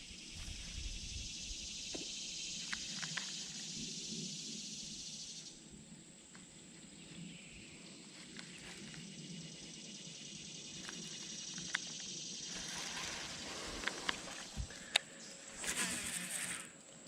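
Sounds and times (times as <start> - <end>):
high-pitched insect buzz: 0.0 - 5.7, 8.4 - 17.0
faint clicks: 13.7 - 15.8.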